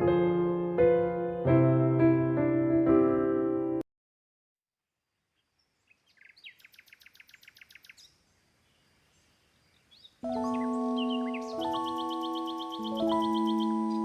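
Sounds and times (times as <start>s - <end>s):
background music: 0.0s - 3.8s, 10.2s - 14.0s
small bird singing: 5.3s - 14.0s.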